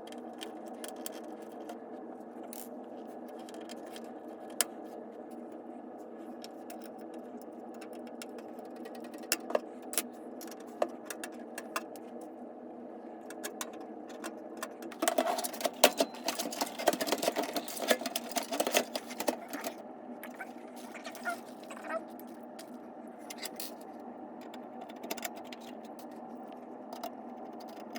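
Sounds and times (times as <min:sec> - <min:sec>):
steady hum: 0:00.0 - 0:27.9
clicking and rattling: 0:13.3 - 0:19.8.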